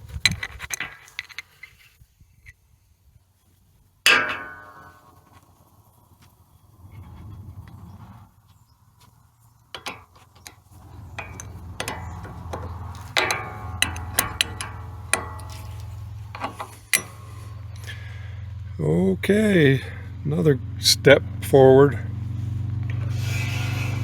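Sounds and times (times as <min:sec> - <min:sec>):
sharp metallic clicks and knocks: 0:04.1 - 0:05.4, 0:09.7 - 0:18.6
steady low hum: 0:04.1 - 0:24.0.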